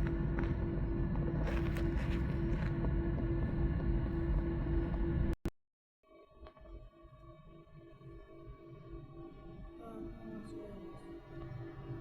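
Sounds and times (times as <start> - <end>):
airliner cabin rumble: 0.0 - 5.4
pulsing hum: 0.0 - 5.4.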